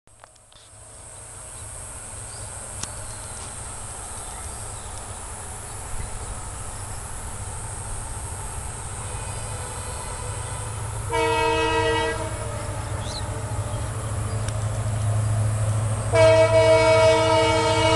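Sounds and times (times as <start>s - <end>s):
diesel locomotive rumble: 0.1s - 17.9s.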